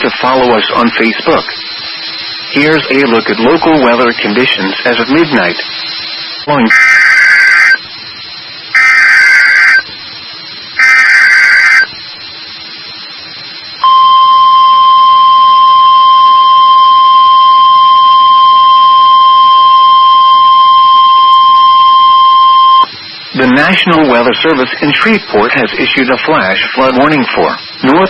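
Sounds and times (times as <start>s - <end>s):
steady warning alarm tone: 1.3s - 10.0s, 10.6s - 12.4s, 13.1s - 22.9s
harsh data screech: 2.5s - 7.8s, 8.7s - 9.9s, 10.8s - 12.0s.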